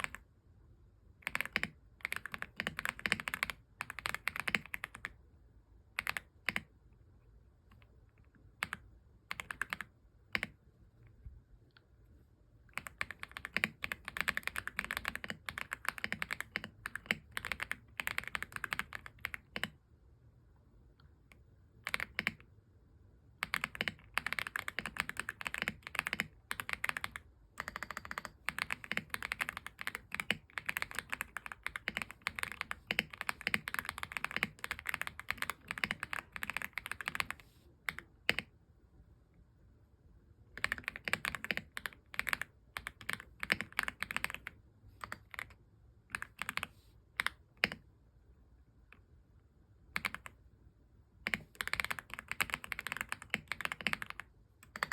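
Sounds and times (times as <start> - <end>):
mechanical keyboard typing: 0.0 - 0.2, 1.2 - 5.2, 5.9 - 6.7, 8.6 - 10.6, 12.7 - 19.8, 21.8 - 22.5, 23.4 - 38.5, 40.5 - 47.8, 50.0 - 50.4, 51.2 - 54.9.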